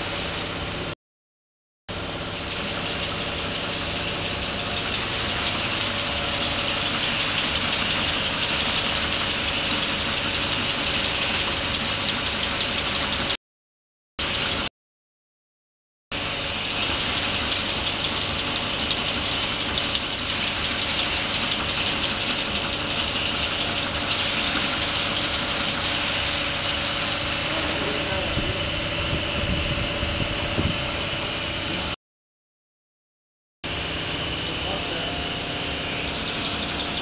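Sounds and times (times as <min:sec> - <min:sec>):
mechanical hum: 0:00.0 - 0:01.0, 0:01.9 - 0:13.4, 0:16.2 - 0:32.0, 0:33.6 - 0:37.0
machine fast ticking: 0:02.0 - 0:13.4, 0:14.2 - 0:14.7, 0:16.2 - 0:30.8, 0:34.1 - 0:37.0.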